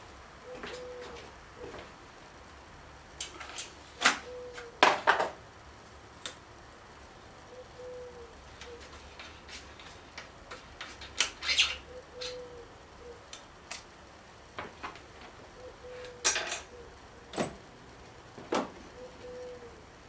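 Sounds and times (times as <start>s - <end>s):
bike parts clattering: 4.8s - 5.4s, 16.1s - 16.7s.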